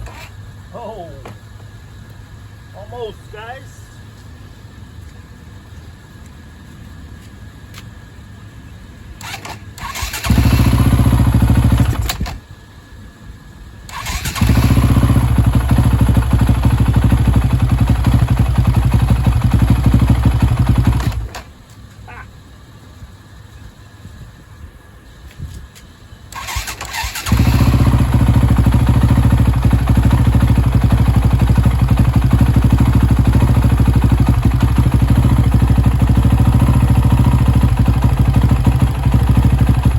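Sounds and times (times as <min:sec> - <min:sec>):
motorcycle engine starting and running: 0:00.0 - 0:00.4, 0:09.2 - 0:12.4, 0:13.9 - 0:21.5, 0:26.3 - 0:39.9.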